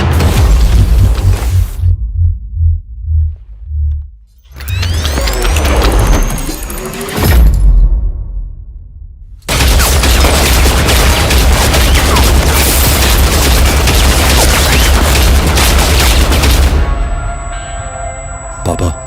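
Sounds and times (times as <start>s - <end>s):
low boom: 0.0s - 4.2s
heavy automatic gunfire: 9.5s - 17.0s.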